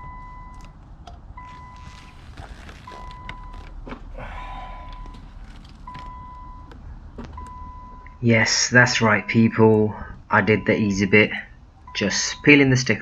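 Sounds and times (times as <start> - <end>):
car warning chime beeping: 0.0 - 13.0.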